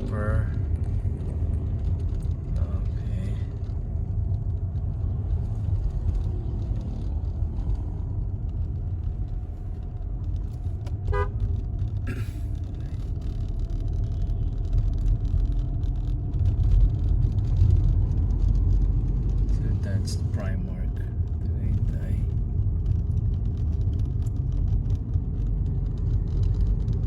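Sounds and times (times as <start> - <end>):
car engine and road rumble: 0.0 - 27.0
car horn toot: 11.1 - 11.4.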